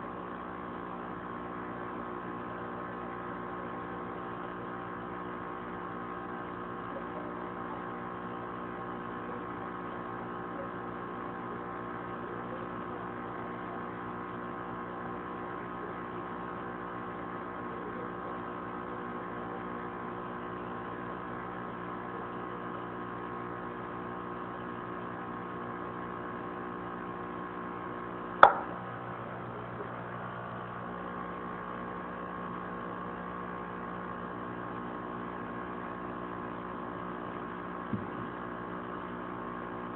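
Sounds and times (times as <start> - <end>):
electrical hum: 0.0 - 39.9
sharp click: 28.4 - 28.7.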